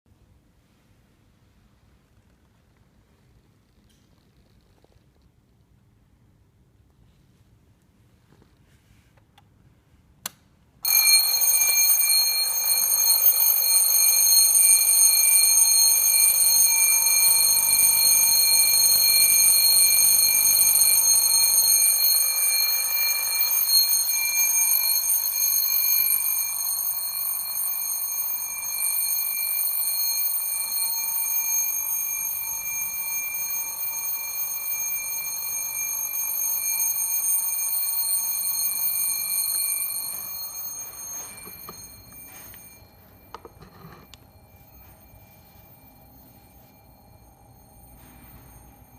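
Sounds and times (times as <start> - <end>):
alarm clock ringing: 10.8 - 48.9.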